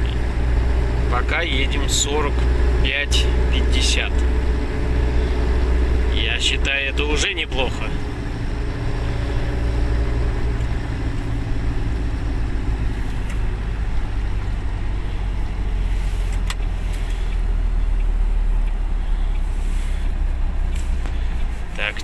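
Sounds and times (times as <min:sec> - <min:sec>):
truck engine drone: 0:00.0 - 0:22.0
tyre noise on snowy road: 0:00.0 - 0:22.0.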